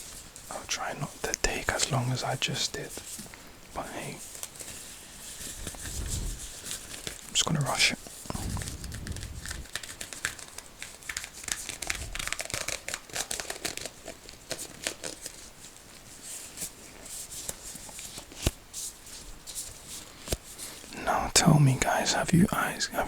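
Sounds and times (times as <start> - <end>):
glove crinkling and snapping: 8.4 - 15.6.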